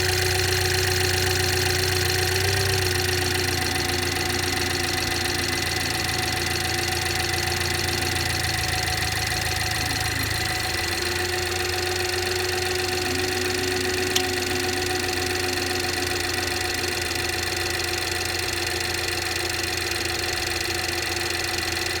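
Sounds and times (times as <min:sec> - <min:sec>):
car engine idling: 0:00.0 - 0:22.0
whining tones: 0:02.8 - 0:17.9.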